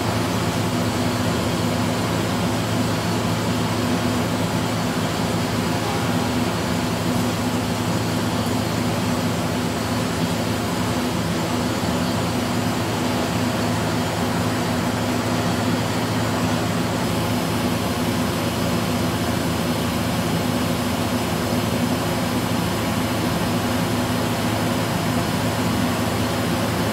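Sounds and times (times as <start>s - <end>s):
machine drone with low tones: 0.0s - 18.3s.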